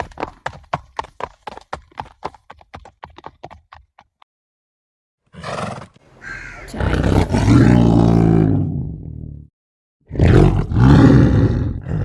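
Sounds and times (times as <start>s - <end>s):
horse hooves clip-clopping: 0.0s - 4.2s.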